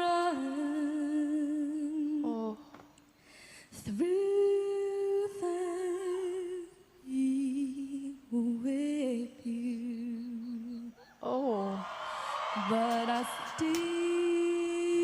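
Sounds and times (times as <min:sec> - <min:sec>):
woman singing wordless notes: 0:00.0 - 0:02.8, 0:03.8 - 0:11.8, 0:12.6 - 0:15.0
singer breathing: 0:03.1 - 0:03.8, 0:11.8 - 0:12.8.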